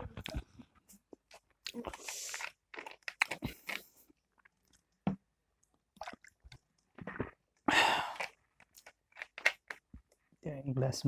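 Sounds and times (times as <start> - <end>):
chewing and mouth sounds: 0.1 - 4.9, 5.6 - 7.4, 8.0 - 10.2.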